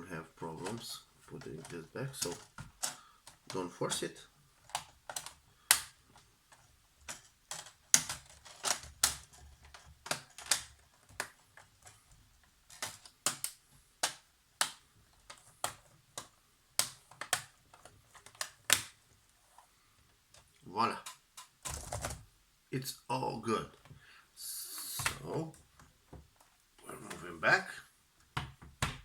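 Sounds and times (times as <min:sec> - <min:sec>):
sharp plastic clicks and taps: 0:01.4 - 0:03.6, 0:04.6 - 0:12.0, 0:12.7 - 0:19.0.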